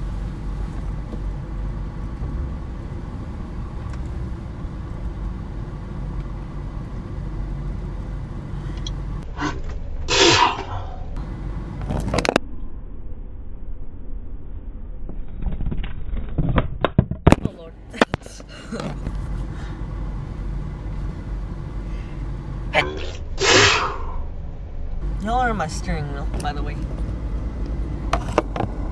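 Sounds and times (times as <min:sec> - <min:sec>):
car engine idling: 0:00.0 - 0:10.2, 0:17.6 - 0:28.9.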